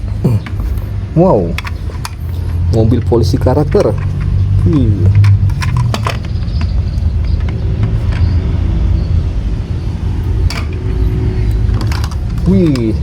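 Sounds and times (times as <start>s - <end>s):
steady low rumble: 0.0s - 13.0s
sharp clicks: 1.5s - 8.4s.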